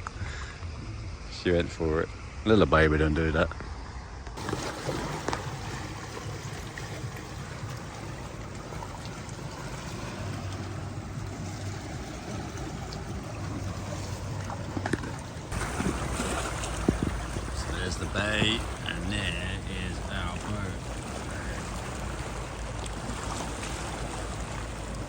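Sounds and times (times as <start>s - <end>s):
water washing at the shore: 4.4s - 25.0s
low rumble: 5.4s - 25.0s.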